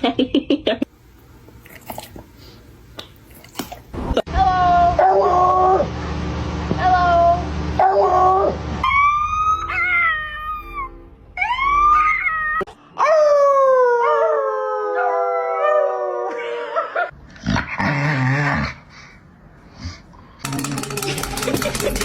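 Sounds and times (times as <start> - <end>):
dog howling: 7.8 - 17.1.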